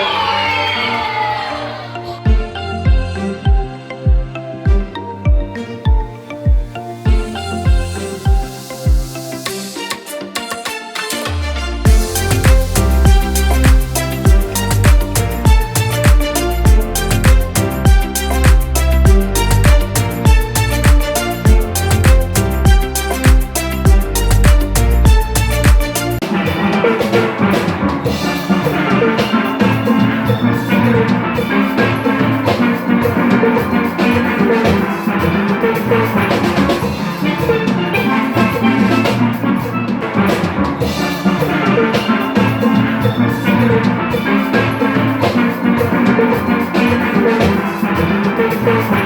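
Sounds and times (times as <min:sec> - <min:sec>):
upbeat steelpan music: 0:00.0 - 0:49.0
drums keeping a steady beat: 0:02.3 - 0:10.5, 0:11.9 - 0:49.0.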